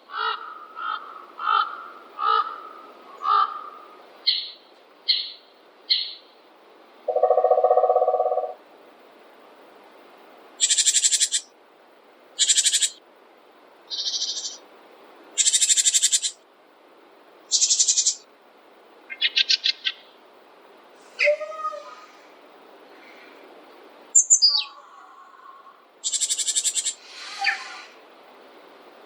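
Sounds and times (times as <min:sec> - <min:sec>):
bird trills: 0:00.2 - 0:06.3, 0:07.1 - 0:08.6, 0:10.6 - 0:11.5, 0:12.4 - 0:13.0, 0:13.9 - 0:14.6, 0:15.4 - 0:16.4, 0:17.5 - 0:18.2, 0:26.0 - 0:27.9
bird chirp: 0:03.2 - 0:06.4, 0:07.1 - 0:08.6, 0:10.6 - 0:11.5, 0:12.4 - 0:13.0, 0:13.9 - 0:14.6, 0:15.4 - 0:16.4, 0:17.5 - 0:18.3, 0:19.1 - 0:20.2, 0:24.1 - 0:24.8, 0:26.0 - 0:27.9.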